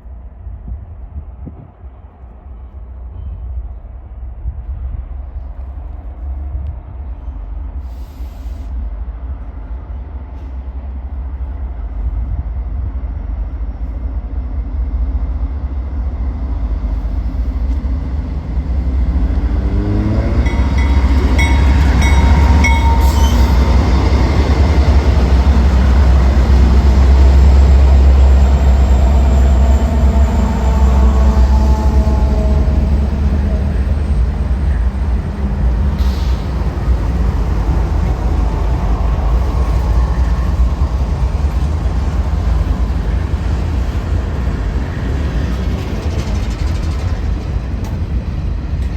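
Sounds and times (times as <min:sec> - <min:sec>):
train passing: 0:00.0 - 0:48.9
thin high tones: 0:20.5 - 0:24.2.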